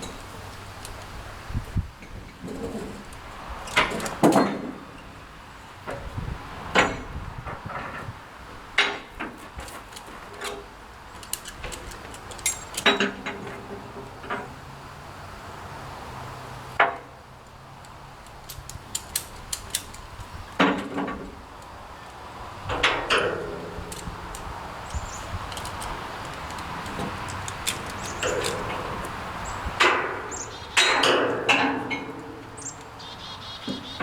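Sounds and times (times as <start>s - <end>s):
metal parts clanking: 6.8s - 14.6s, 22.7s - 33.0s.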